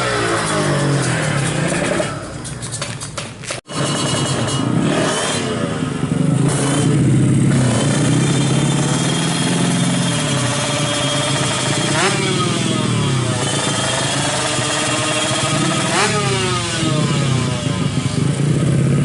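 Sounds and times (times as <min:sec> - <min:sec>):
motorcycle engine revving: 0:00.0 - 0:02.6, 0:03.6 - 0:19.0.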